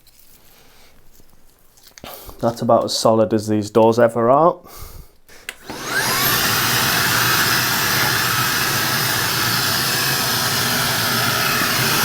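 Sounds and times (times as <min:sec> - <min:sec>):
vacuum cleaner running: 0:05.6 - 0:12.0.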